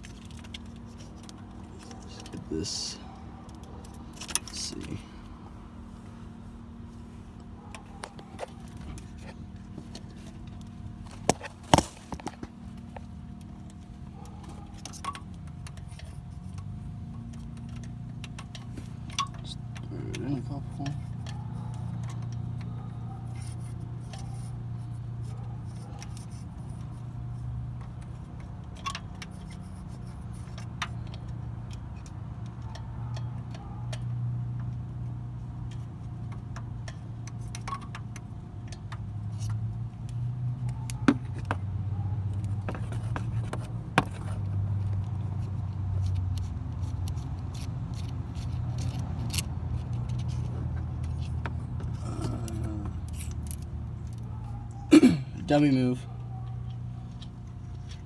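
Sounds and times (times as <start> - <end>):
steady low hum: 0.0 - 33.0.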